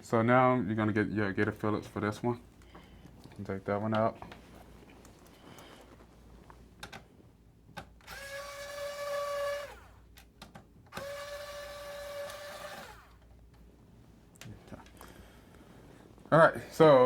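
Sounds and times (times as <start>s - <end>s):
electric screwdriver whirring: 8.0s - 10.0s, 10.9s - 13.2s.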